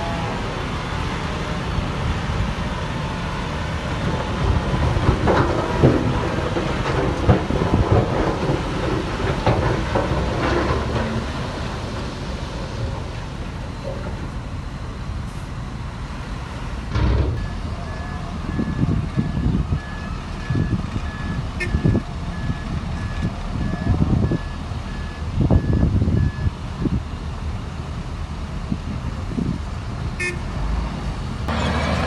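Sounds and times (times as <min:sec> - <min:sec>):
heavy diesel engine running: 0:00.0 - 0:32.0
thump: 0:16.9 - 0:17.4
reversing alarm beeping: 0:17.4 - 0:26.5.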